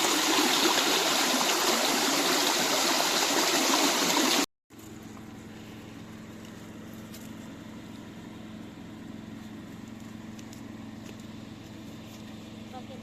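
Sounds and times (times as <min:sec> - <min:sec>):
rushing stream water: 0:00.0 - 0:04.5.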